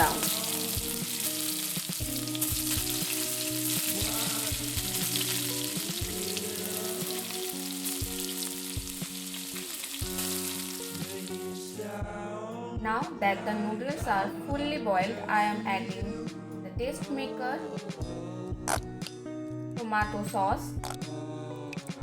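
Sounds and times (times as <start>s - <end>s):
chicken frying in hot oil: 0.0s - 11.3s.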